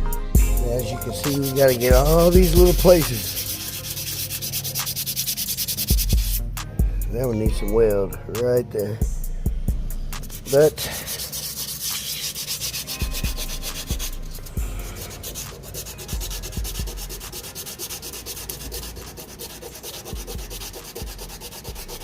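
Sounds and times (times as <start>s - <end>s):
sandpaper rubbing on filler: 0.7s - 6.4s, 10.2s - 22.0s.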